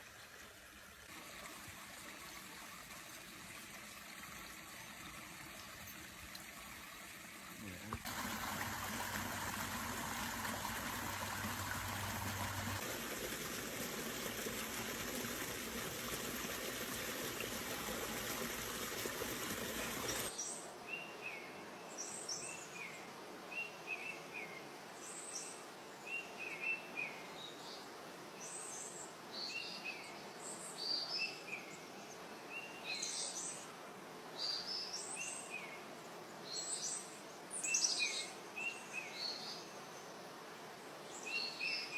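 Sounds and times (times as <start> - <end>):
creek water running: 0.0 - 20.4.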